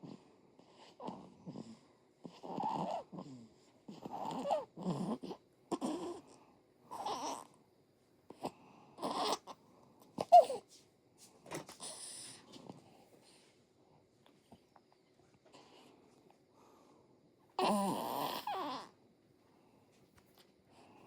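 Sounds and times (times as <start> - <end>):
baby snoring: 0.0 - 7.5, 8.4 - 9.6, 17.6 - 19.0.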